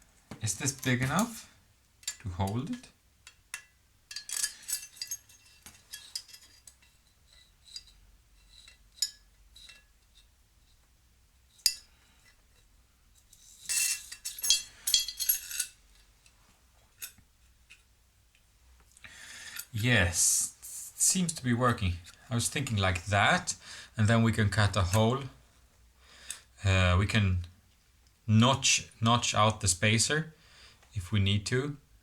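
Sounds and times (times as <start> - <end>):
small metal hardware clinking: 0.6 - 10.2, 13.3 - 16.1.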